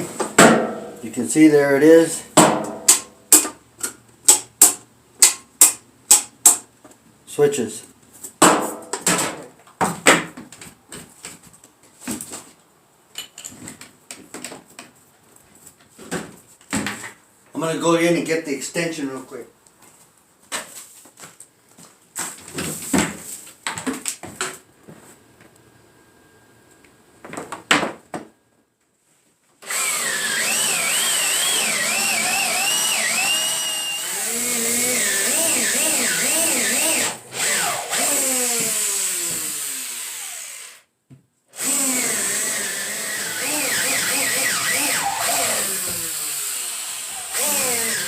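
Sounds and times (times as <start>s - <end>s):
knocks and clatters of hand work: 13.1s - 15.0s
electric drill whining: 29.6s - 40.9s, 41.6s - 48.0s.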